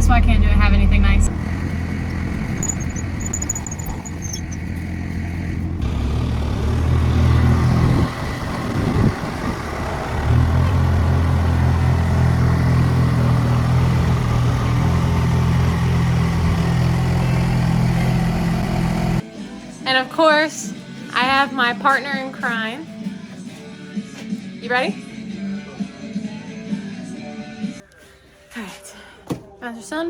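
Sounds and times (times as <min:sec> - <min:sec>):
car engine idling: 0:00.0 - 0:19.2.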